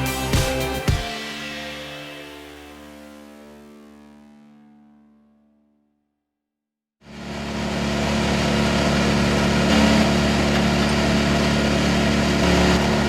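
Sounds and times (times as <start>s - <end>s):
wood chipper droning: 7.0s - 13.0s.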